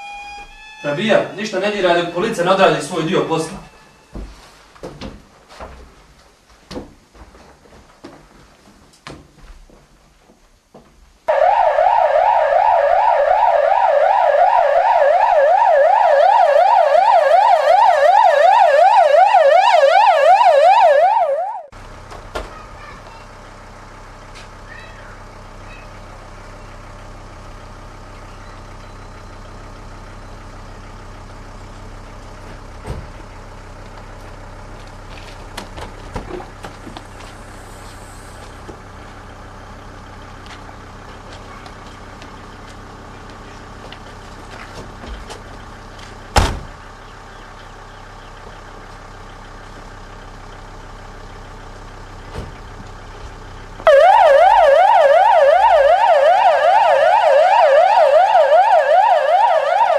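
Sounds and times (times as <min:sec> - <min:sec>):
emergency vehicle siren wailing: 0:00.0 - 0:04.1, 0:11.3 - 0:21.7, 0:53.8 - 0:59.9.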